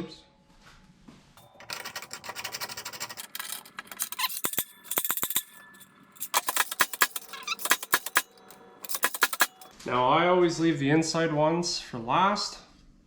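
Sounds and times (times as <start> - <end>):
metal tools clicking and rattling: 1.4 - 9.7.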